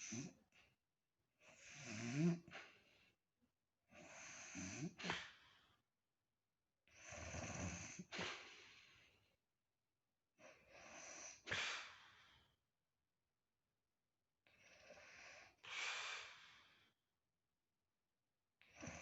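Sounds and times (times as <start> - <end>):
woman snoring: 1.7 - 2.5, 4.1 - 5.2, 7.0 - 8.1, 18.8 - 19.0.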